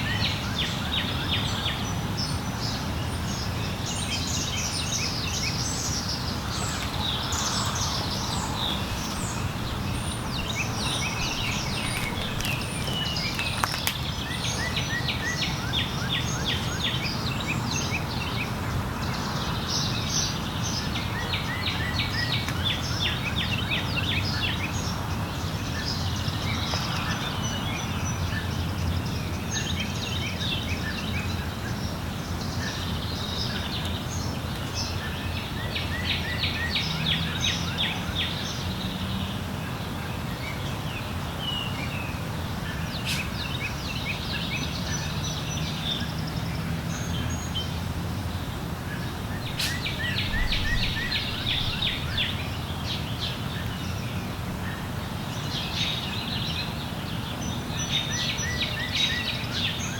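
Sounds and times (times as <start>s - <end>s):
birds singing: 0.0s - 59.9s
steady low rumble: 6.3s - 14.4s, 49.2s - 53.5s.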